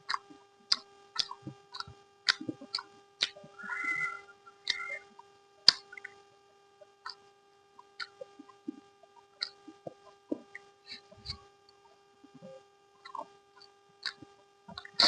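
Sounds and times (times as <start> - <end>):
wet chewing and lip smacks: 0.1 - 3.4, 5.7 - 6.2, 7.9 - 8.8, 9.4 - 11.4, 13.0 - 15.0.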